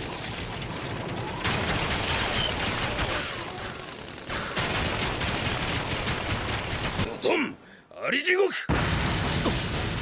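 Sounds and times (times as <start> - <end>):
crackling rock rattle effect: 0.0 - 7.1.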